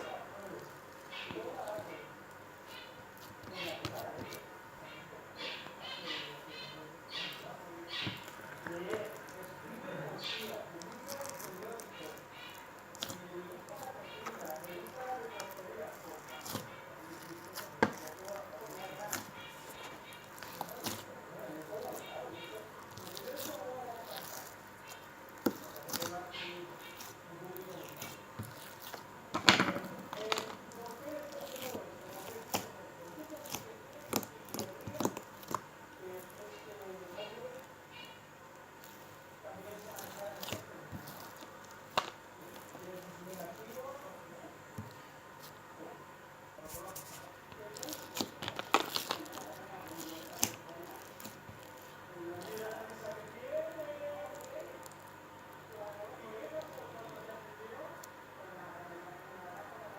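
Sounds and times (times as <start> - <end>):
slime squelching: 0.0 - 58.3
slime sticky pops and crackles: 22.8 - 36.4, 47.8 - 53.1.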